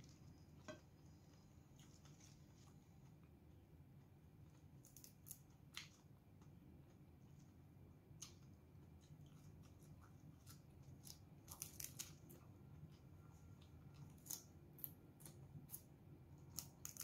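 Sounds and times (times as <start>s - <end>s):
crunchy chewing of leafy greens: 8.1s - 17.0s.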